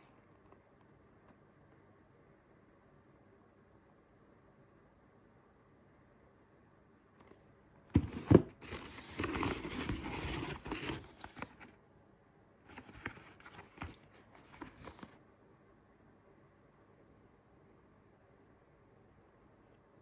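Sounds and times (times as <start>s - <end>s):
packaging crinkling and rustling: 8.0s - 11.7s, 12.7s - 15.2s.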